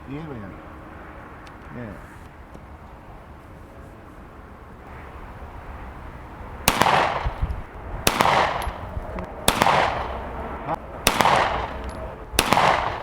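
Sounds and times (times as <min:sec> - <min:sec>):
pistol shots with echo: 0:06.6 - 0:13.0.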